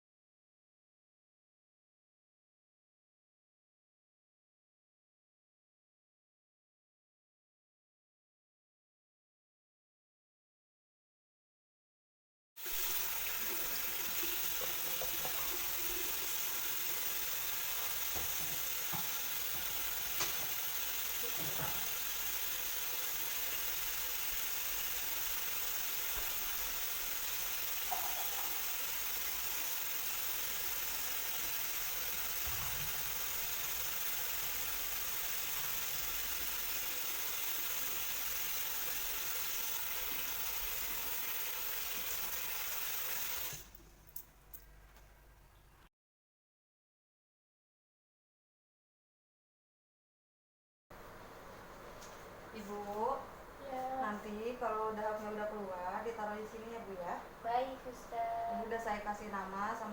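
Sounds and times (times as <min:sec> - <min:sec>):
steady background hiss: 0:50.9 - 0:59.9.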